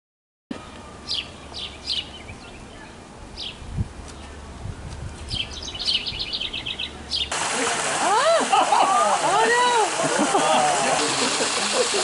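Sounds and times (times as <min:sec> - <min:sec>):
birds chirping: 0:00.5 - 0:07.8.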